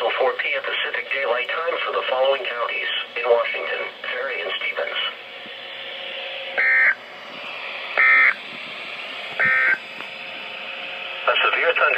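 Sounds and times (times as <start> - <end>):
radio hiss: 0.0 - 11.9
warbling digital data tones: 6.4 - 7.0, 8.0 - 8.4, 9.4 - 9.8.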